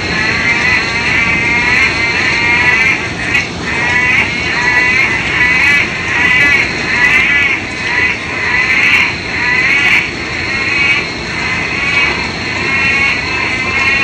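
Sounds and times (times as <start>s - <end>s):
chorus of frogs calling: 0.0s - 14.0s.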